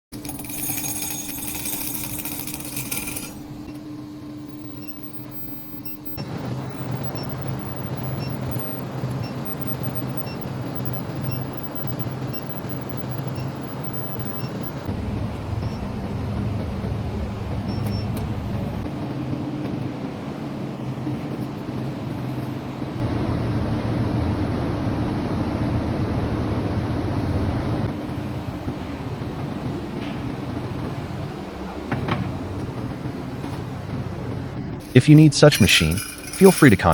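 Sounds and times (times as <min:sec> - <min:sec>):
furnace electrical hum: 0:00.1 - 0:13.9, 0:14.5 - 0:36.9.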